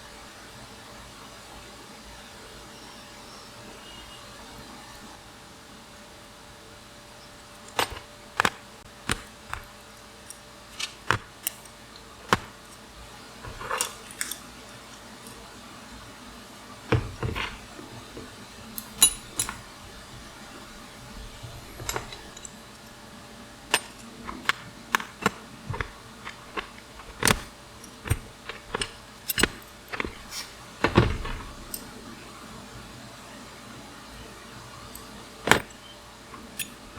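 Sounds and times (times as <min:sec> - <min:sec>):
metallic clinks of hand tools: 0:13.4 - 0:14.5, 0:18.8 - 0:19.6.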